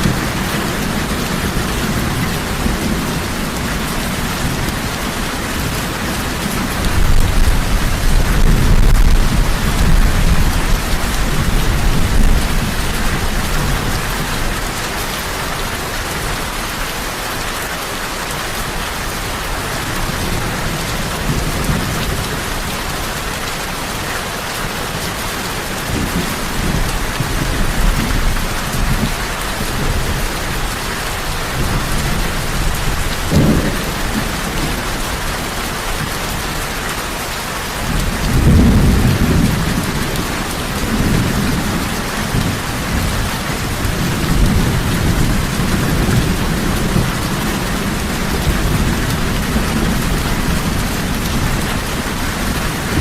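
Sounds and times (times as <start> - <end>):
thunder rumbling: 0.0 - 14.8, 25.6 - 36.2, 37.8 - 53.0
heavy rain falling: 0.0 - 53.0
thunder crack: 7.0 - 14.4.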